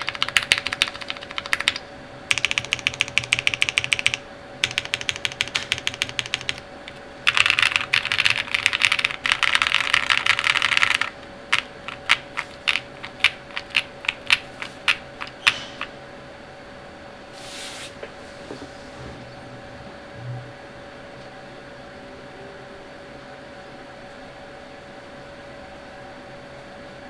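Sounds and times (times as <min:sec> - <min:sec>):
mechanical keyboard typing: 0:00.0 - 0:15.6.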